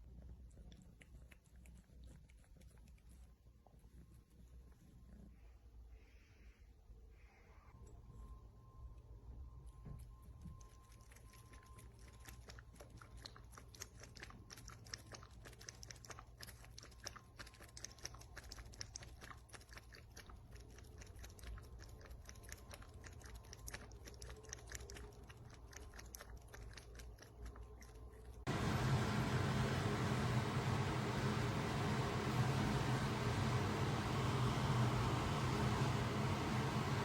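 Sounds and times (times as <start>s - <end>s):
pet chewing clicks: 0.2s - 3.3s, 9.8s - 28.5s.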